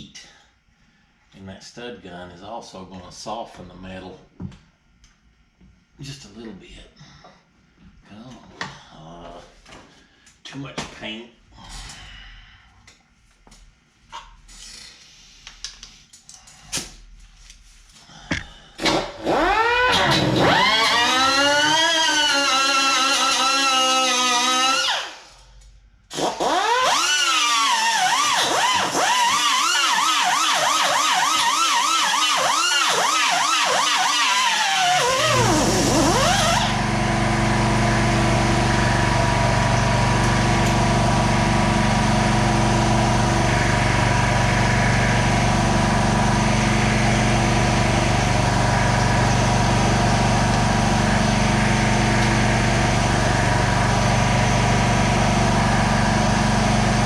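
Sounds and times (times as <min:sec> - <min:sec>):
siren yelping: 0:29.2 - 0:36.7
mechanical hum: 0:32.5 - 0:57.0.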